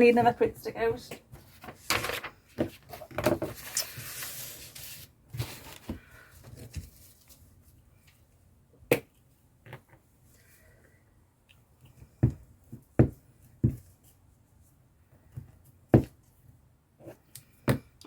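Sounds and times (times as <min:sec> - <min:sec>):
paper rustling: 0:01.4 - 0:07.8.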